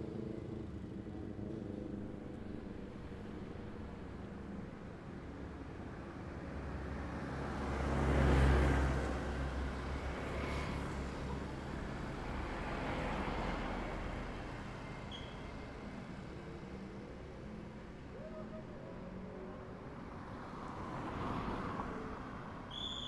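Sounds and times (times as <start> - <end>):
vehicles passing: 19.6 - 23.0.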